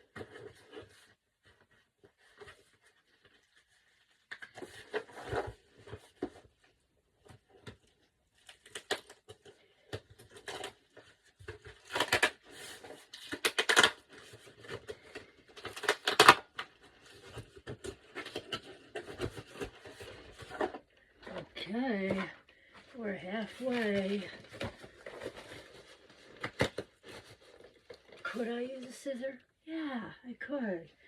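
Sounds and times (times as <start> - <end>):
packaging being torn and crinkled: 8.4 - 9.5, 10.1 - 20.8.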